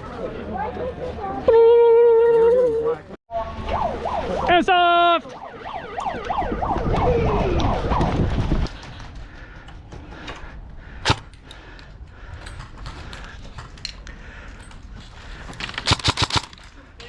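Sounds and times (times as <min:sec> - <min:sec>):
airsoft guns firing: 0:11.0 - 0:11.2, 0:15.8 - 0:16.7.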